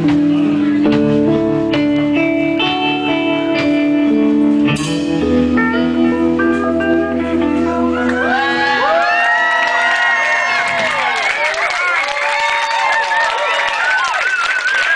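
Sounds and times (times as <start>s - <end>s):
live rock band playing: 0.0s - 9.6s.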